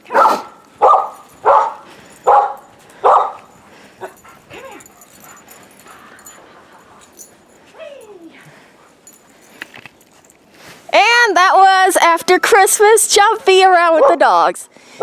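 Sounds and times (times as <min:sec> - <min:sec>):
dogs barking: 0:00.0 - 0:07.2
dog whining: 0:04.0 - 0:06.4.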